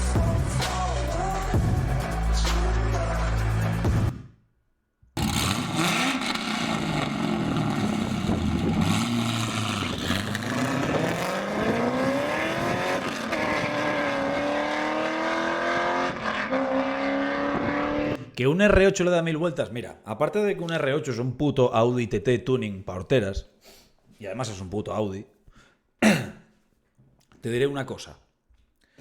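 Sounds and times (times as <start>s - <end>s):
music: 0.0s - 4.4s
car engine accelerating: 5.2s - 18.2s.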